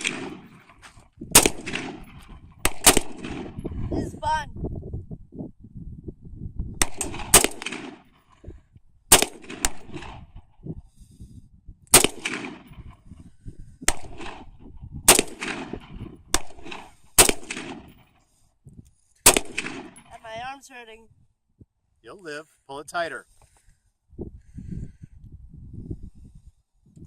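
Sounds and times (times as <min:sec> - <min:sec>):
rifle shots with echo: 0:00.0 - 0:00.7, 0:01.3 - 0:03.6, 0:06.8 - 0:08.2, 0:09.1 - 0:10.4, 0:11.9 - 0:13.1, 0:13.9 - 0:18.0, 0:19.2 - 0:20.2.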